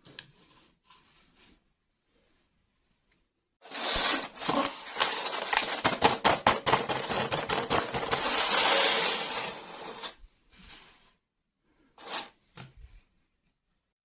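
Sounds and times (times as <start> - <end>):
toy packaging rustling: 3.6 - 10.2.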